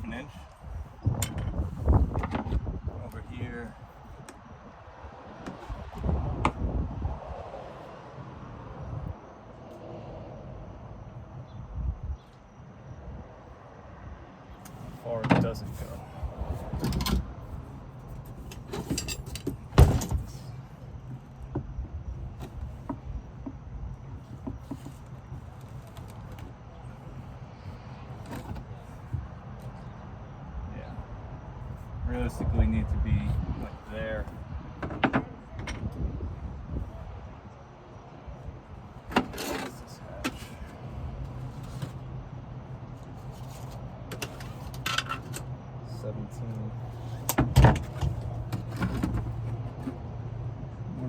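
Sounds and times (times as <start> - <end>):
knocks and scrapes on deck: 47.2 - 50.0.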